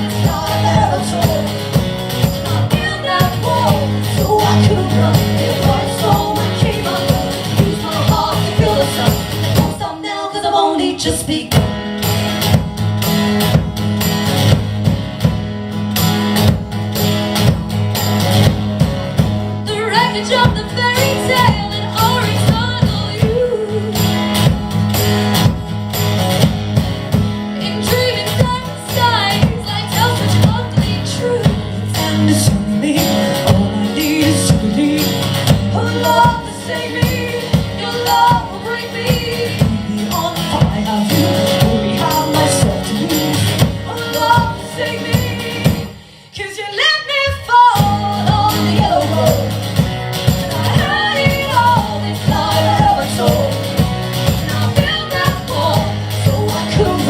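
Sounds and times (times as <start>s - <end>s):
people singing: 0.0s - 11.4s, 19.7s - 24.5s, 27.6s - 57.0s
strummed guitar: 0.0s - 57.0s.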